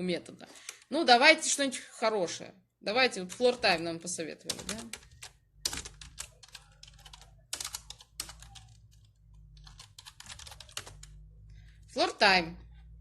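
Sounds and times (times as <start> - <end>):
computer keyboard typing: 3.1 - 11.2.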